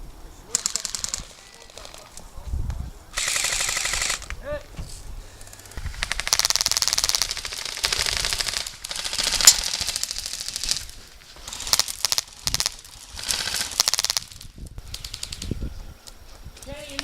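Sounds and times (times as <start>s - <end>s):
airsoft gun bursts: 0.5s - 2.2s, 3.1s - 4.6s, 5.4s - 15.5s
sharp loud crack: 3.2s - 15.4s.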